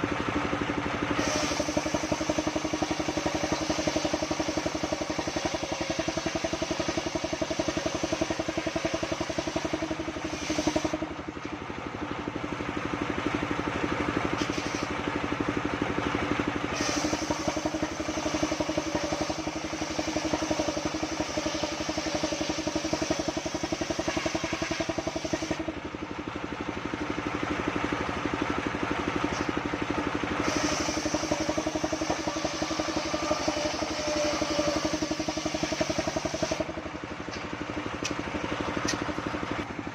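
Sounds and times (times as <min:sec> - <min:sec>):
band sawmill drone: 0:00.0 - 0:39.9
hiss: 0:01.1 - 0:11.1, 0:14.4 - 0:15.0, 0:16.7 - 0:25.7, 0:30.4 - 0:36.7.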